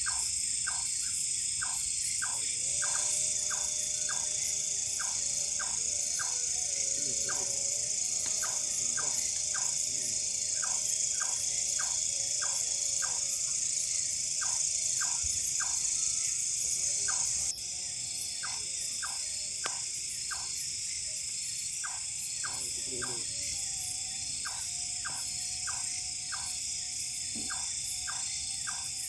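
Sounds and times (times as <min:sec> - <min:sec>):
high insect hiss: 0:00.0 - 0:29.0
short regular frog calls: 0:00.0 - 0:29.0.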